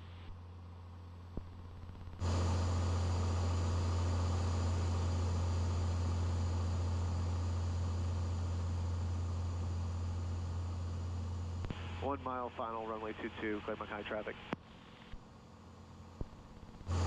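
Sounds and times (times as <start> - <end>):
light aircraft engine drone: 0.0 - 17.0.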